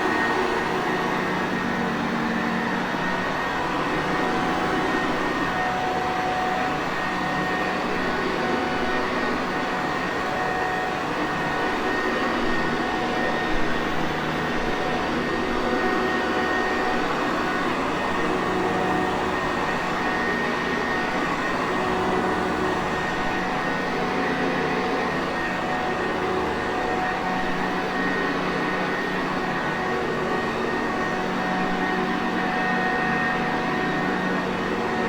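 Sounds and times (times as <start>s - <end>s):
vacuum cleaner running: 0.0s - 35.0s.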